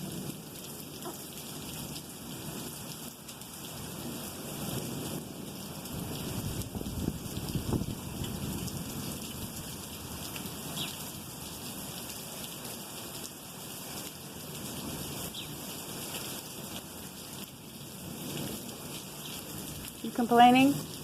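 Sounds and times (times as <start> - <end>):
steady rain pattering: 0.0 - 21.0.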